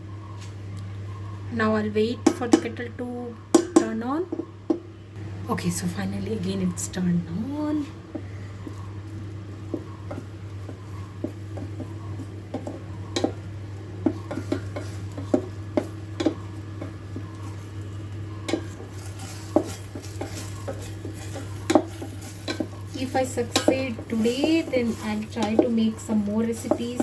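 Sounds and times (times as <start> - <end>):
steady low hum: 0.0 - 27.0
clicks and taps on pot: 3.5 - 4.8, 9.6 - 27.0
utensil scraping in kettle: 8.1 - 27.0.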